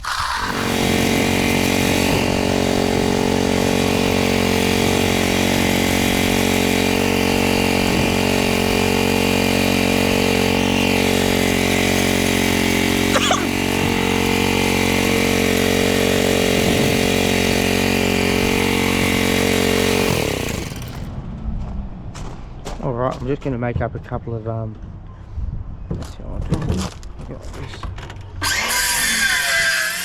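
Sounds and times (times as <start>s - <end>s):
power trowel engine running: 0.0s - 21.1s, 28.4s - 30.0s.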